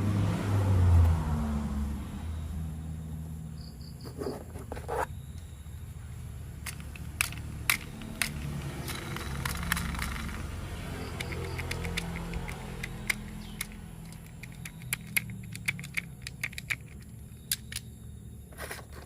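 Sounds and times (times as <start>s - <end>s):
plastic toy pieces clicking: 6.6s - 17.9s.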